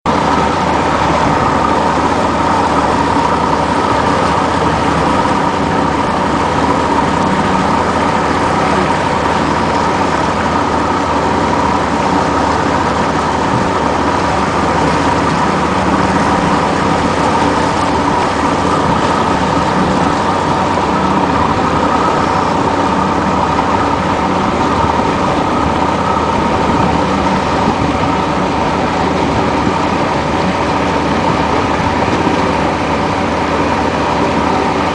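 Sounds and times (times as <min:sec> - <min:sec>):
engine running loudly: 0:00.0 - 0:34.9.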